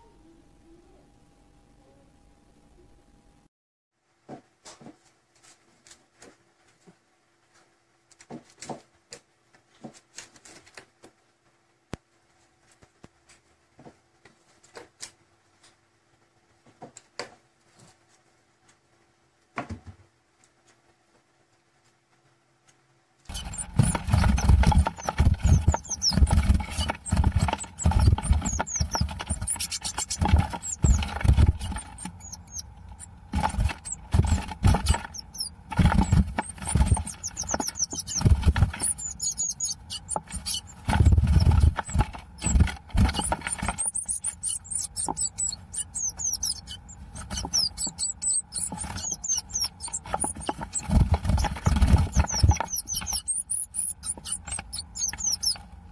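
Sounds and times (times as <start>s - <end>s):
low thumps and bumps: 23.3s - 55.6s
small animals squeaking chirps: 23.3s - 55.6s.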